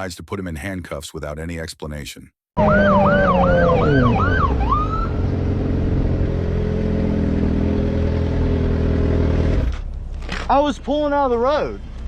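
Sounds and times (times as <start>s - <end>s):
police siren yelping: 2.6s - 5.2s
low siren tone winding down: 2.6s - 6.4s.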